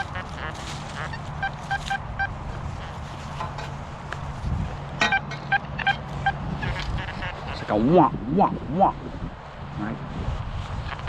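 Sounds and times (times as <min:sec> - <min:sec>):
metal detector beeps: 0:05.0 - 0:06.0.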